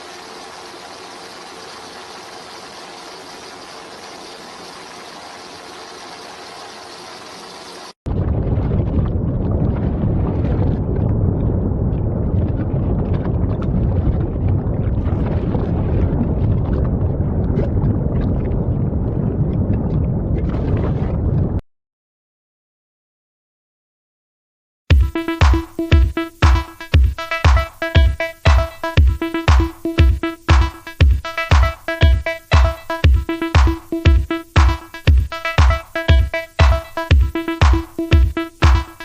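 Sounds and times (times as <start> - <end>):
faint hum: 0.0 - 18.5
loud low rumbling: 8.1 - 20.5.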